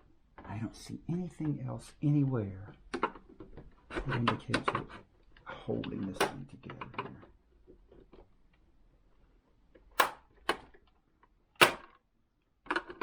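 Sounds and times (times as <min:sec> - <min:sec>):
plastic case snapping and clicking: 0:06.1 - 0:07.2, 0:10.0 - 0:11.0, 0:11.6 - 0:12.0.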